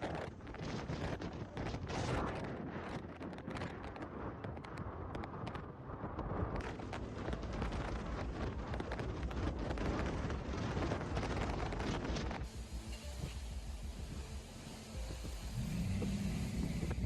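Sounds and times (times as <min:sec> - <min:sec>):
strong wind buffeting microphone: 0:00.0 - 0:14.3, 0:15.0 - 0:17.0.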